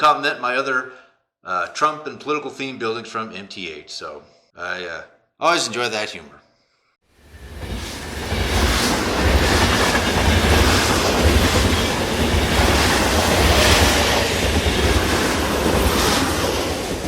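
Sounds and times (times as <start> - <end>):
train clickety-clack on rails: 7.5 - 17.0.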